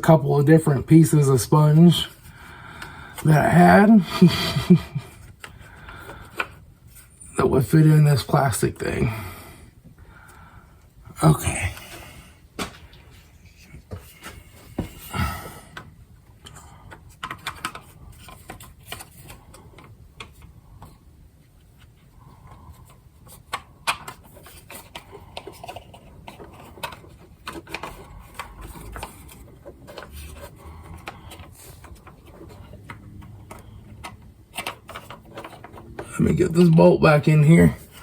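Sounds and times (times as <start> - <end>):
plastic and metal parts clicking: 16.9 - 21.0, 22.8 - 36.2.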